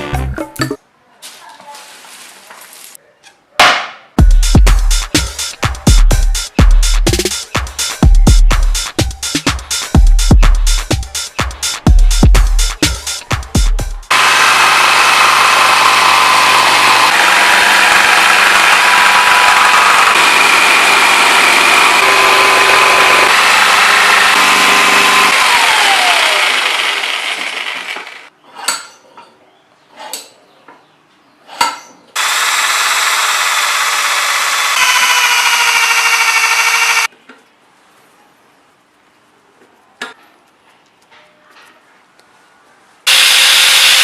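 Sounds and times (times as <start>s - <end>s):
small electric motor whirring: 14.1s - 28.3s, 32.2s - 37.1s, 43.1s - 44.0s.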